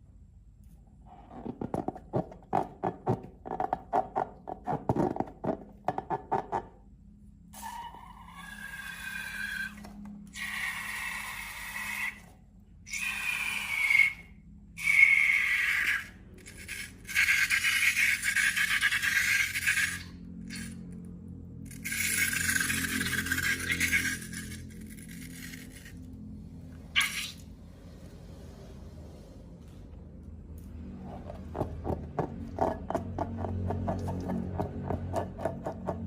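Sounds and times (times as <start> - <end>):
faint low hum: 19.4 - 36.0
squeaky rasping scrapes: 21.7 - 26.1.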